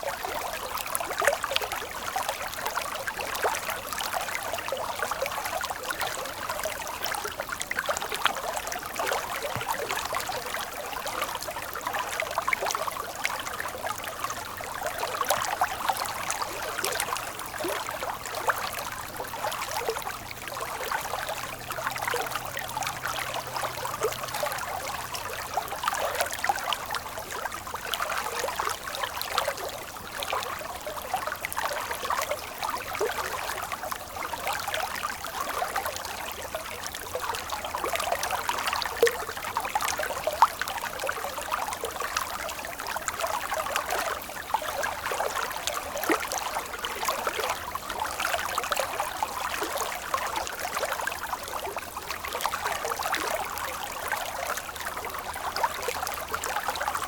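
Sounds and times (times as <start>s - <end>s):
stream water flowing: 0.0s - 57.0s.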